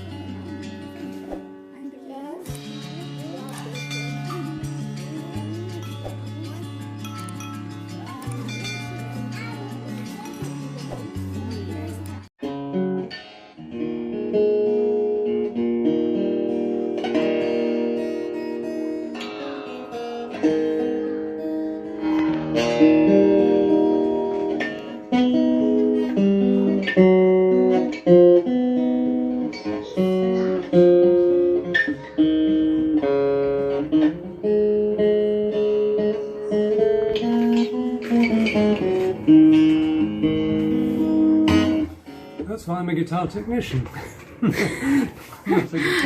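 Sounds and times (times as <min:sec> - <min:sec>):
acoustic guitar chords: 0:00.0 - 0:46.0.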